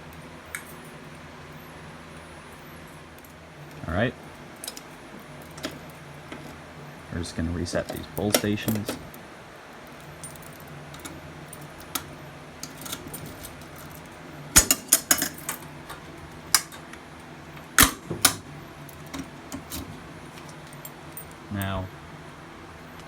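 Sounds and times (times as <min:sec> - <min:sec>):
keys jangling: 0:09.9 - 0:16.0.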